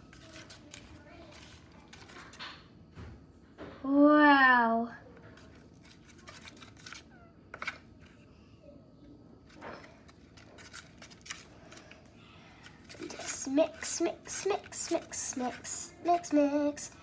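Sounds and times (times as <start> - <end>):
spoon stirring slime: 0.0 - 2.6, 12.6 - 17.0.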